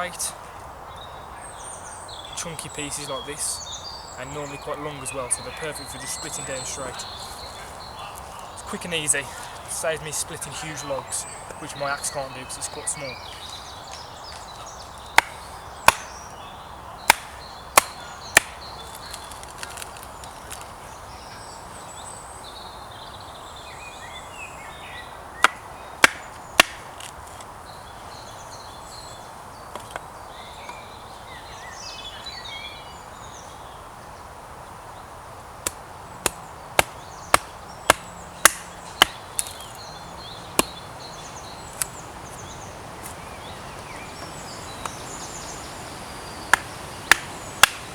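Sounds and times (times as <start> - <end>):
axe splitting wood: 15.2 - 16.1, 17.1 - 20.6, 25.4 - 27.1, 35.6 - 39.6, 46.5 - 47.9.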